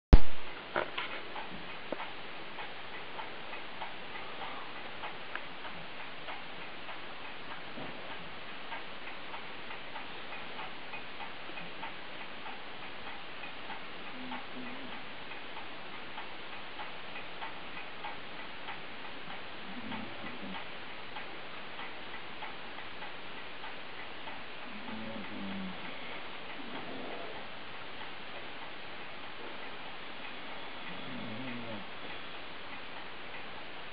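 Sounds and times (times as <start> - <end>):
steady hiss: 0.2 - 33.9
light regular ticking: 0.5 - 33.9
soft snoring: 14.0 - 15.0, 19.6 - 20.7, 24.6 - 27.5, 30.4 - 32.3.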